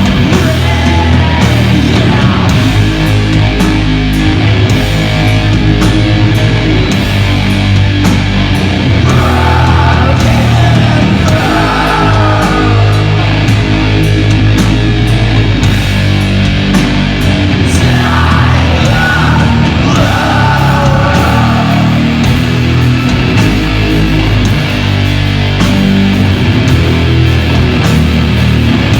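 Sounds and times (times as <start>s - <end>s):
person singing: 0.0s - 3.1s, 9.0s - 13.7s, 17.8s - 22.4s
doom metal band playing live: 0.0s - 28.9s.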